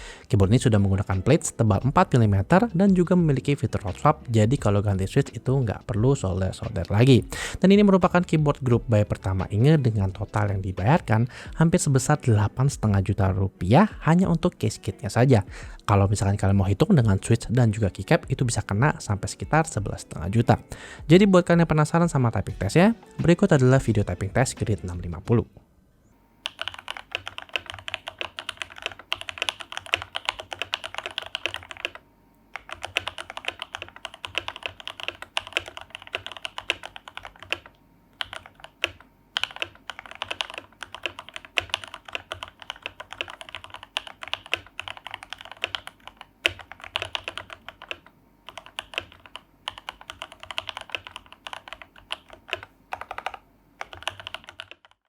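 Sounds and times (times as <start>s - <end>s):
mechanical keyboard typing: 26.4s - 55.0s.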